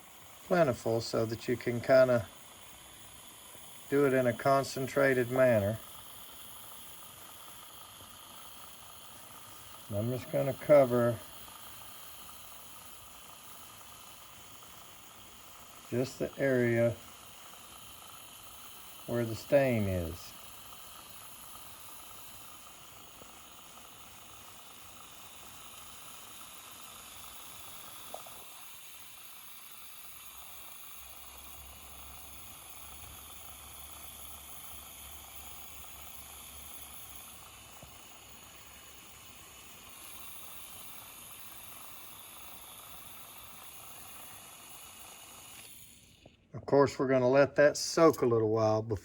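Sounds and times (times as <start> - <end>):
sprayer hissing: 0.0 - 46.4.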